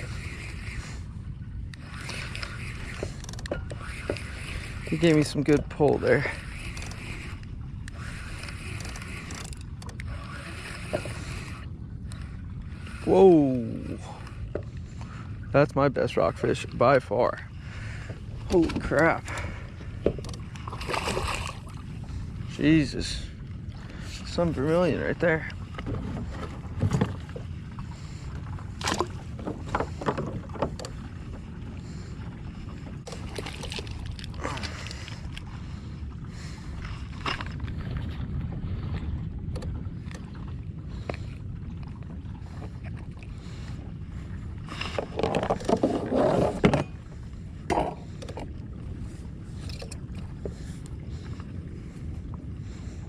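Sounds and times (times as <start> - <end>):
fishing reel grinding: 0.0 - 1.1, 1.7 - 14.0
water: 0.0 - 53.0
wind: 0.0 - 53.0.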